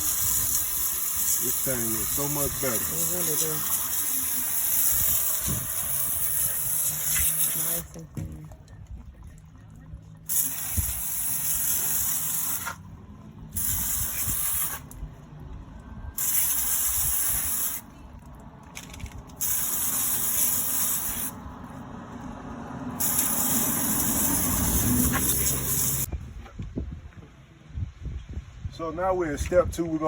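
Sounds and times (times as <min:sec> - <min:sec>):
spray hissing: 0:00.0 - 0:07.9, 0:10.3 - 0:12.8, 0:13.6 - 0:15.0, 0:16.2 - 0:17.9, 0:19.4 - 0:21.4, 0:23.0 - 0:26.1
low steady hum: 0:07.9 - 0:10.3.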